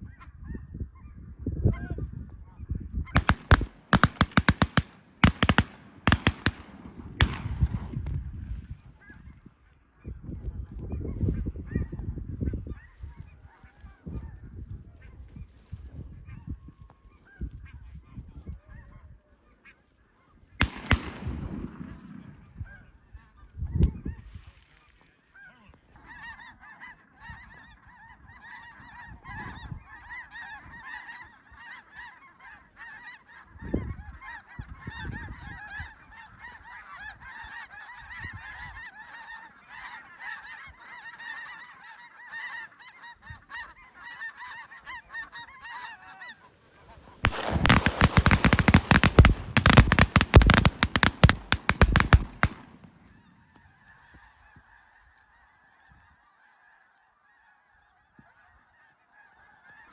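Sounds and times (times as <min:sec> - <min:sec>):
snow goose calls: 0:25.4 - 0:59.9.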